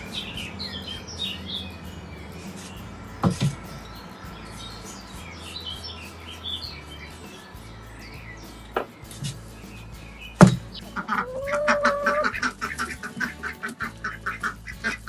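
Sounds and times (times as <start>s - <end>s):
small birds chirping: 0.0s - 15.0s
dull thump: 3.2s - 3.8s, 10.4s - 10.8s.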